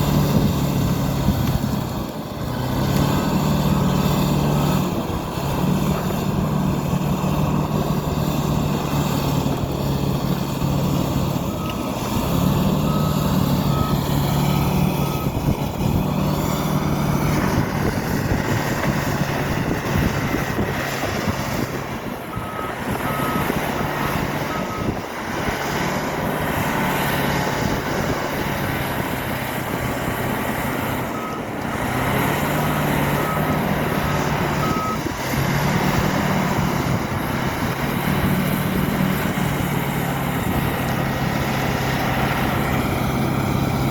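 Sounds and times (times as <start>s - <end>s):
bulldozer diesel engine running: 0.0s - 43.9s
reversing alarm beeping: 11.3s - 16.4s, 22.2s - 25.0s, 32.6s - 35.1s.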